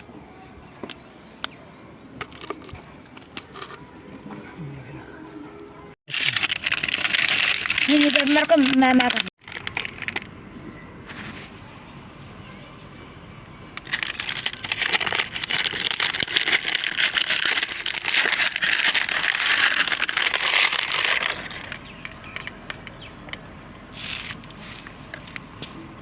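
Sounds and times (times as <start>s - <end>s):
plastic wrapping crinkling: 6.1s - 10.3s, 13.8s - 22.5s.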